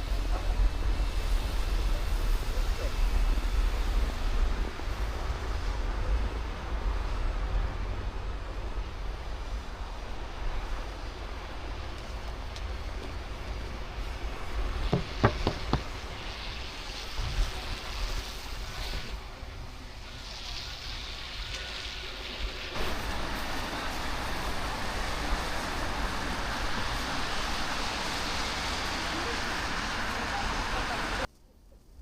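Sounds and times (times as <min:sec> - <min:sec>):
steady street hiss: 0:00.0 - 0:32.0
sharp knocks: 0:14.9 - 0:15.9.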